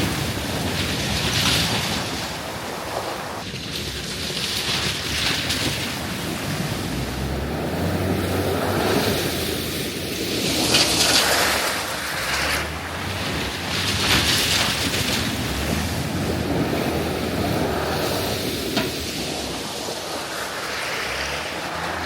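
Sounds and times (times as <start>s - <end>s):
wind noise on microphone: 0.0s - 22.0s
tyres crunching on gravel: 10.2s - 22.0s.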